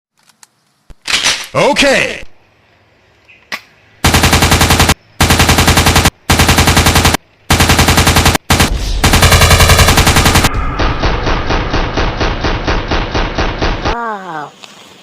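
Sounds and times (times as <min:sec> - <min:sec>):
machine-gun firing: 0:04.0 - 0:14.0.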